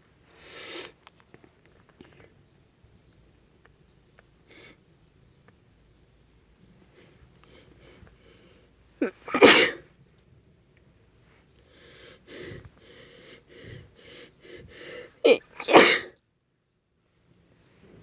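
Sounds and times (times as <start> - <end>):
soft halting breaths: 6.7 - 8.9, 11.2 - 15.7
woman sneezing: 9.0 - 9.8, 15.3 - 16.2.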